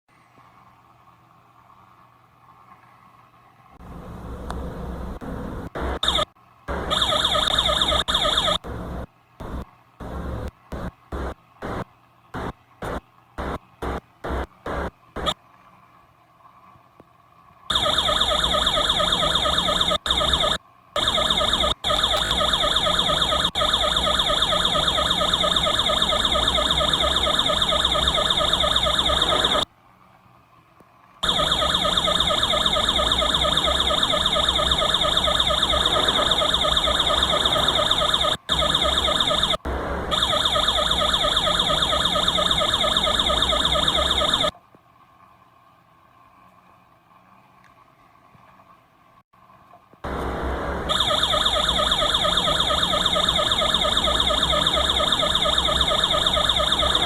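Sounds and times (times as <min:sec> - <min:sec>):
electronic yelp police siren: 0:05.8 - 0:11.8, 0:12.4 - 0:15.4, 0:17.7 - 0:29.7, 0:31.2 - 0:44.5, 0:50.9 - 0:57.0.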